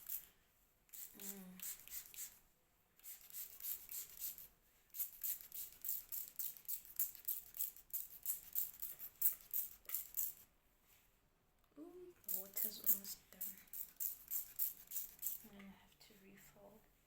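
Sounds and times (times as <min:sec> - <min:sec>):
trigger spray bottle misting: 0:00.9 - 0:02.4, 0:03.0 - 0:07.8.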